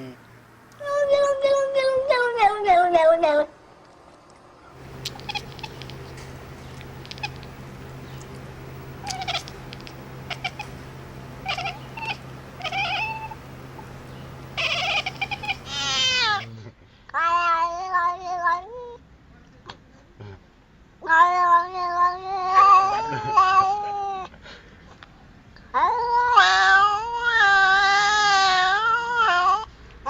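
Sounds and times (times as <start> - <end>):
steady low hum: 3.6 - 16.7
animal calling: 4.8 - 16.6.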